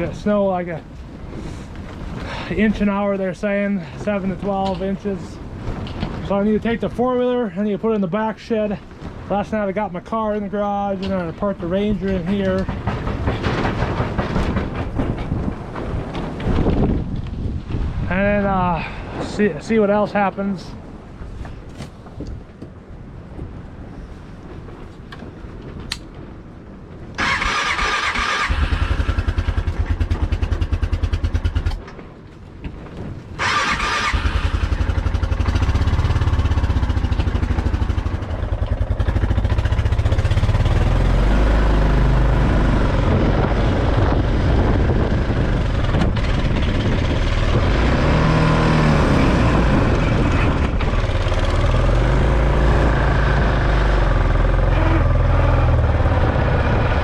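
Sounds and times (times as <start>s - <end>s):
atv engine starting and running: 27.2s - 32.0s, 33.4s - 57.0s.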